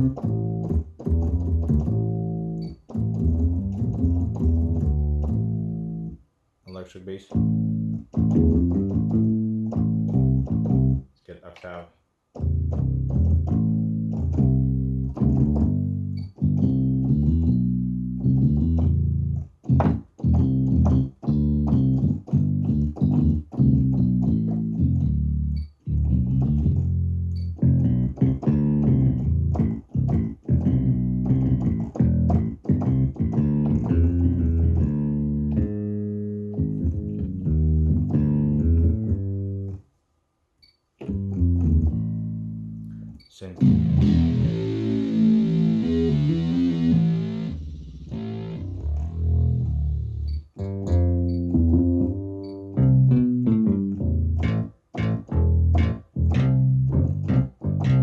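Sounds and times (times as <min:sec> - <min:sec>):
synthesizer bass notes: 0:43.6 - 0:58.0.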